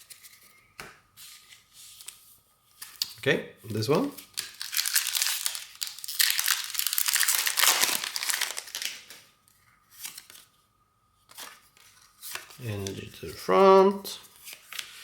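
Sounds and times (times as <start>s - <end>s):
foil wrapper crinkling and tearing: 4.4s - 9.2s.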